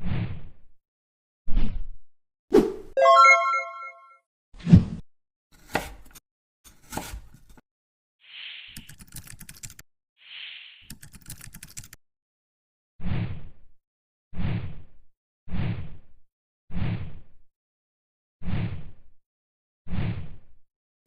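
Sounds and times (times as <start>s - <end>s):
knife chopping on cutting board: 5.6s - 7.6s.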